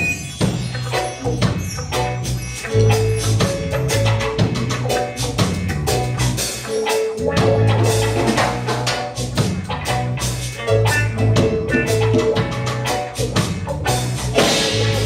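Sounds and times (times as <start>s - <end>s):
live band playing instrumental: 0.0s - 15.0s.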